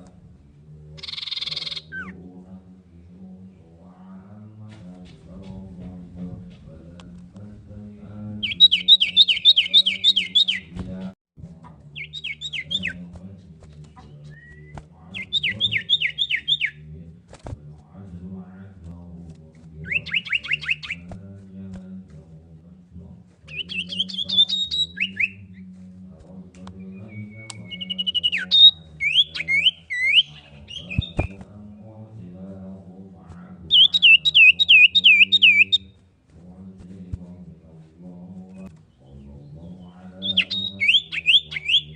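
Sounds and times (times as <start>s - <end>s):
bird singing whistled notes: 1.0s - 2.2s, 8.4s - 10.8s, 12.0s - 13.0s, 14.2s - 16.8s, 19.8s - 21.1s, 23.5s - 25.6s, 26.8s - 31.4s, 33.7s - 35.8s, 40.2s - 41.9s.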